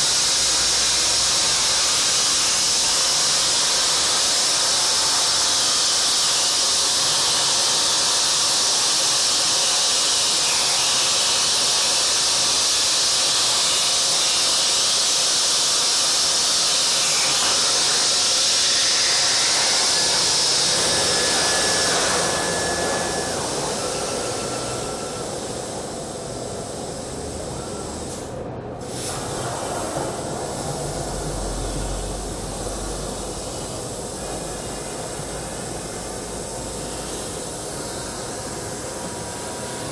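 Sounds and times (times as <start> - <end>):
plasma cutter hissing: 0.0 - 39.9.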